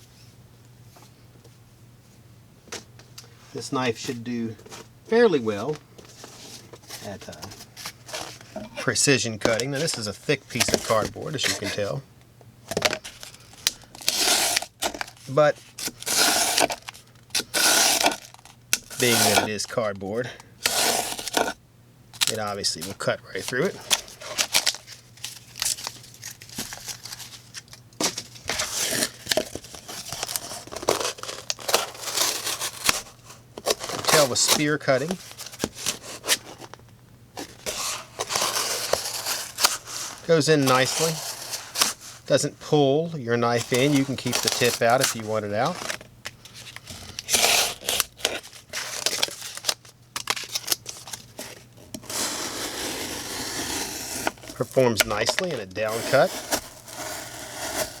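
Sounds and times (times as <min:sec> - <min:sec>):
knife cutting through cardboard: 0:13.1 - 0:19.6, 0:20.6 - 0:21.6, 0:28.0 - 0:36.7, 0:37.4 - 0:42.2, 0:43.5 - 0:46.0, 0:46.8 - 0:58.0
knife slicing through cardboard: 0:14.0 - 0:15.2, 0:15.8 - 0:16.8, 0:17.4 - 0:18.3, 0:18.9 - 0:19.6, 0:20.6 - 0:21.6, 0:37.7 - 0:42.1, 0:52.0 - 0:58.0.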